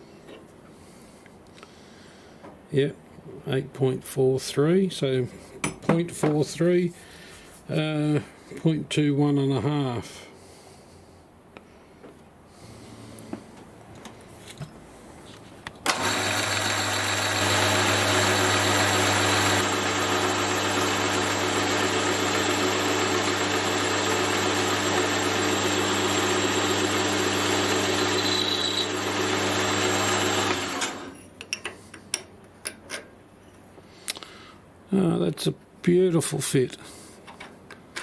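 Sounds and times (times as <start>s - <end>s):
metal lathe motor humming: 15.9s - 31.2s.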